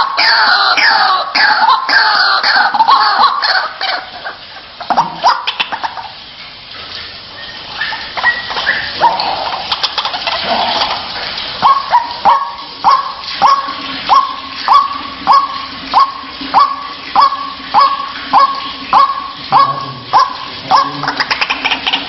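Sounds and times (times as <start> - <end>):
bird harsh repeated calls: 12.9 - 22.0.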